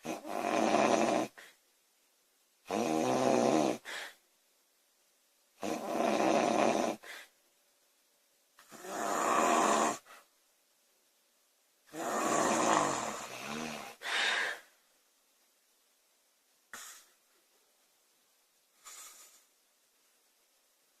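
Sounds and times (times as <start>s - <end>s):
girl snoring loudly: 0.0s - 1.4s, 2.7s - 4.0s, 5.6s - 7.1s, 8.6s - 10.1s, 11.9s - 14.5s
short breath sound: 14.0s - 14.7s.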